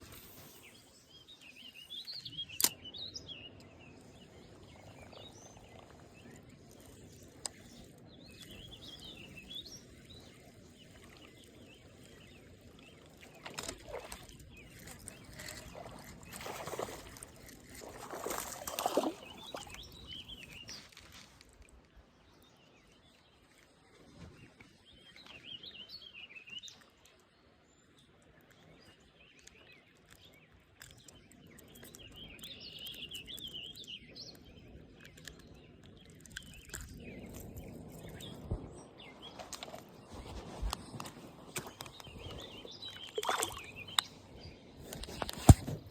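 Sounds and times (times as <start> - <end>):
songbird singing: 0.4 - 21.2, 24.3 - 45.9.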